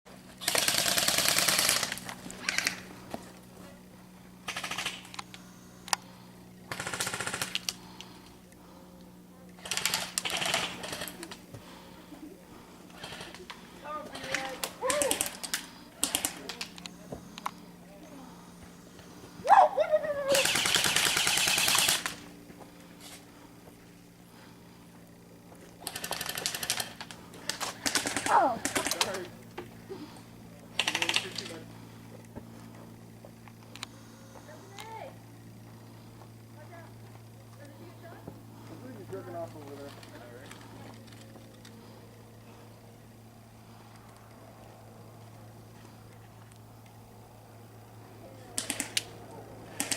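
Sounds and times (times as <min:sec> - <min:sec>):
airsoft guns firing full auto: 0:00.4 - 0:02.9, 0:04.4 - 0:05.4, 0:06.6 - 0:08.0, 0:09.6 - 0:11.4, 0:12.9 - 0:16.8, 0:20.3 - 0:22.3, 0:25.8 - 0:29.3, 0:30.7 - 0:31.6, 0:48.5 - 0:49.9
sharp clicks: 0:30.8 - 0:31.5, 0:48.6 - 0:49.1.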